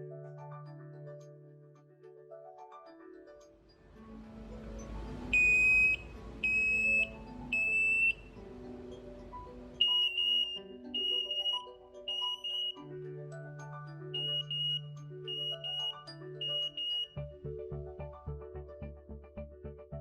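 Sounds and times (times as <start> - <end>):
higher-pitched alarm beeping: 5.4 - 8.2, 9.8 - 12.8, 14.2 - 17.2
smoke alarm shrill beeps: 5.4 - 8.3, 9.8 - 12.8, 14.2 - 17.2.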